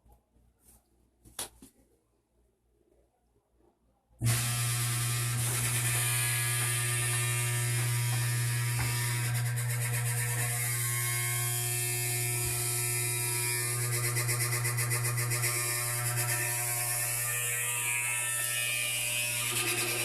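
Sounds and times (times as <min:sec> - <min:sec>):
washer-dryer buzzing hum: 0:04.2 - 0:20.0.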